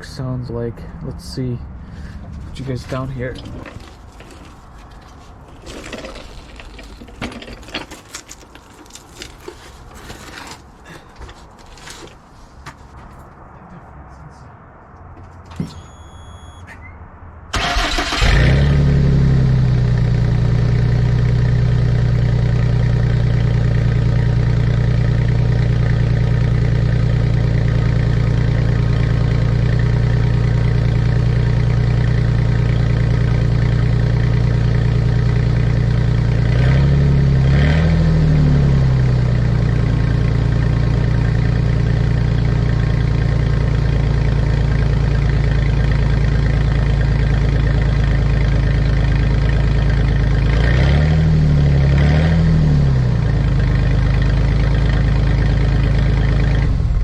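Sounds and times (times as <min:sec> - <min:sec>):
engine cranking and starting: 0:03.3 - 0:10.1, 0:17.5 - 0:18.6
engine revving: 0:17.5 - 0:23.2, 0:30.1 - 0:44.1, 0:48.0 - 0:54.2
loud engine idling: 0:39.2 - 0:50.5, 0:53.1 - 0:57.0.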